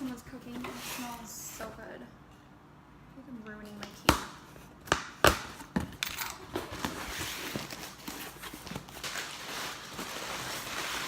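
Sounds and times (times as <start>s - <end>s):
packaging rustling and crinkling: 6.5s - 11.0s.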